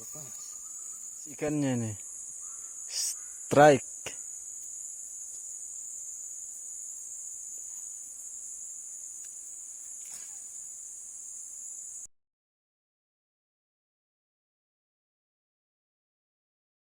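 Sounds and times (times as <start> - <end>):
insects chirring: 0.0 - 12.1.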